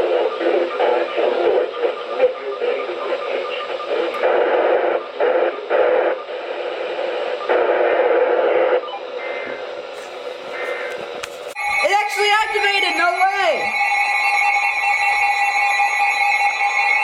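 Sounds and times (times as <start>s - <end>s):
radio static hiss: 0.0s - 11.6s.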